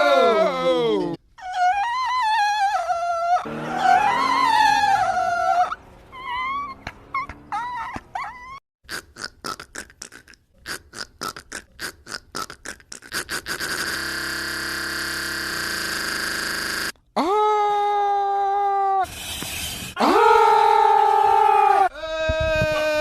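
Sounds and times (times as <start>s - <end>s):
man making rapid vocal clicks: 8.9s - 13.8s.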